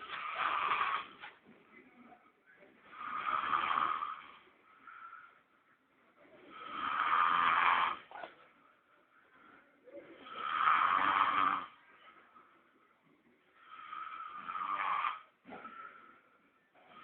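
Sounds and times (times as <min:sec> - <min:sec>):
person snoring: 0:00.0 - 0:01.2, 0:02.8 - 0:05.0, 0:06.4 - 0:08.2, 0:10.0 - 0:11.8, 0:13.6 - 0:16.0
quiet breathing: 0:00.0 - 0:17.0.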